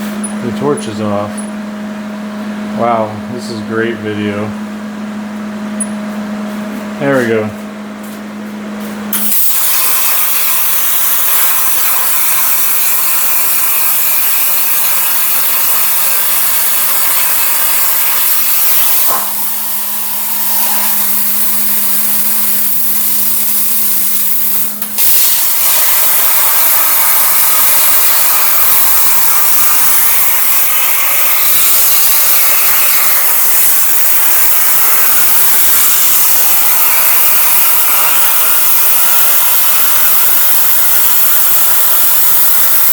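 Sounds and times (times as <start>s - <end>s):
steady low hum: 0.0s - 9.4s
plasma torch hissing: 9.1s - 42.9s.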